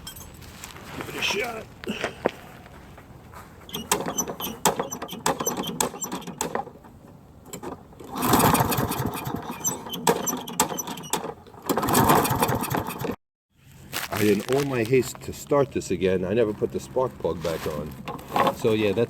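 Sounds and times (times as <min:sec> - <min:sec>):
lawn mower engine cranking: 0:00.0 - 0:01.6, 0:03.6 - 0:13.2, 0:17.5 - 0:19.0.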